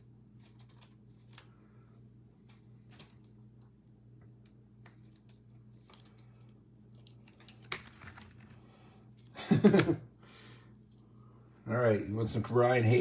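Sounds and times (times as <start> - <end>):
steady low hum: 0.0 - 13.0
trading cards and wrappers rustling: 0.4 - 1.5, 4.9 - 9.3.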